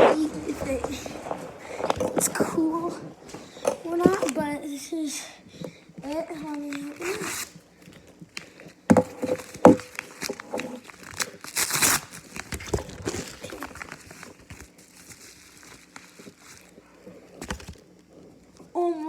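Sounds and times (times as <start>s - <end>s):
packaging crinkling and tearing: 5.6s - 18.7s
sharp knocks on packaging: 17.4s - 17.8s.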